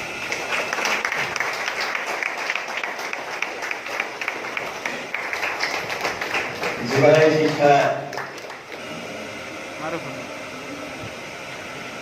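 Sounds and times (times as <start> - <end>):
audience applause: 0.0 - 8.9.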